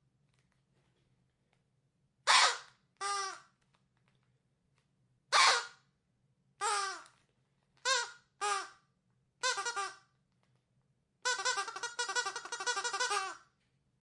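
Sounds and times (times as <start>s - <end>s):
rubber duck squeaking: 2.3s - 3.5s, 5.3s - 5.8s, 6.6s - 7.2s, 7.8s - 8.8s, 9.4s - 10.0s, 11.2s - 13.4s.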